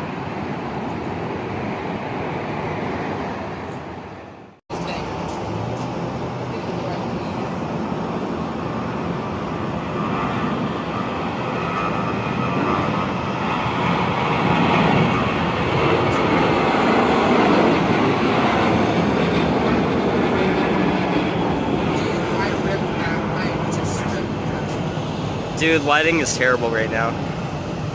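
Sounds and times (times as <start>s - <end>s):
jet engines rumbling: 0.0s - 27.9s.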